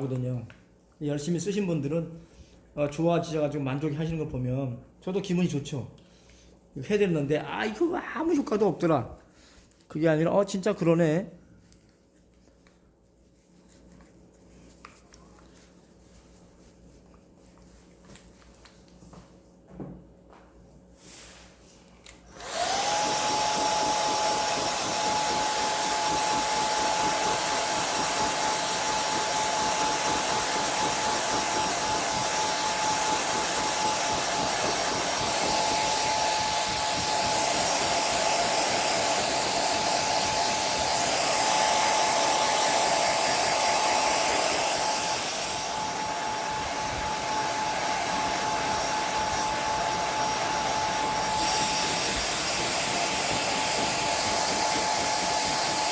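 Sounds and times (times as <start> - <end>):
hair dryer running: 22.0 - 55.9.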